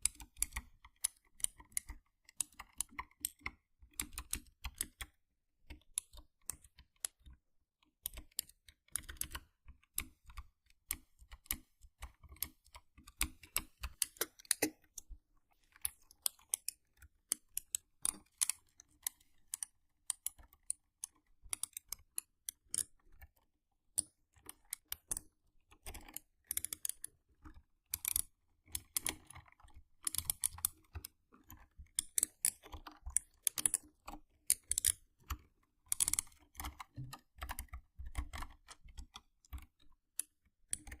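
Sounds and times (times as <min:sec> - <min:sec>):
mechanical keyboard typing: 0:27.9 - 0:39.8, 0:40.7 - 0:41.0.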